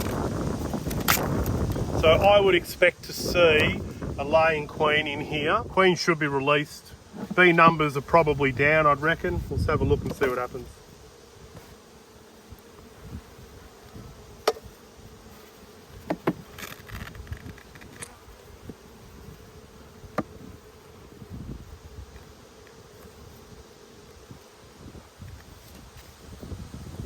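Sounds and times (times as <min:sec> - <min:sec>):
honeybees buzzing: 0:00.0 - 0:27.0
hive frames knocking: 0:07.0 - 0:08.5, 0:09.8 - 0:10.6, 0:14.4 - 0:14.8, 0:15.9 - 0:19.4, 0:20.0 - 0:20.6.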